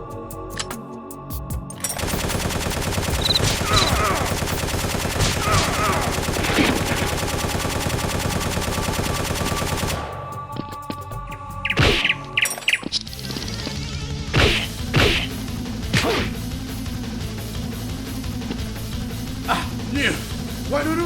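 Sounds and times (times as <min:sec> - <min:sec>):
automatic gunfire: 0:02.0 - 0:10.1.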